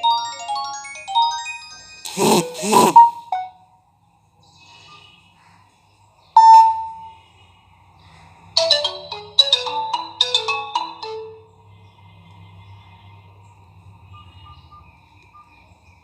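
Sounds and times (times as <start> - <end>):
phone ringtone tune: 0.0 - 3.7, 8.6 - 11.6.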